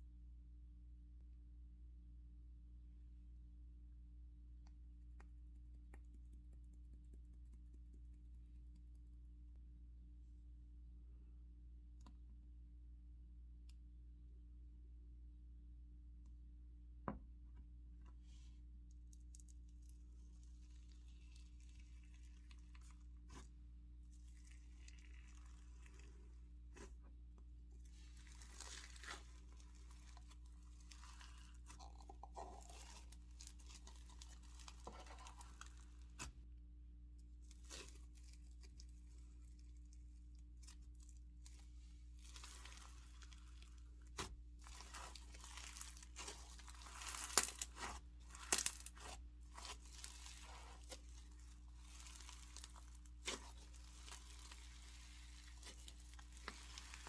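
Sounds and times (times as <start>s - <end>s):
slime crackling and crunching: 19.0s - 36.3s, 37.2s - 57.0s.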